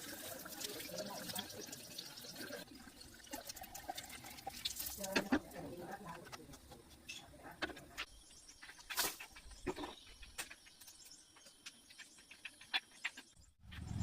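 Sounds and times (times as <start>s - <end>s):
faint insect chirping: 8.0s - 13.4s.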